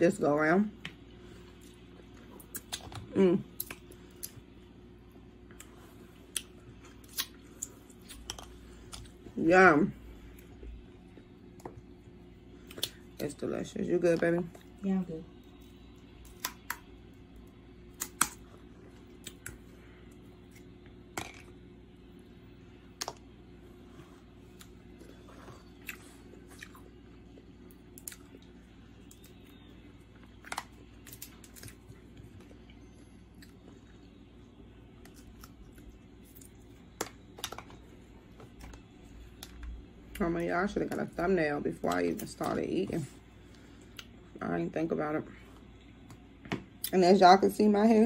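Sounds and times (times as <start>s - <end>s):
chewing: 24.5s - 29.4s.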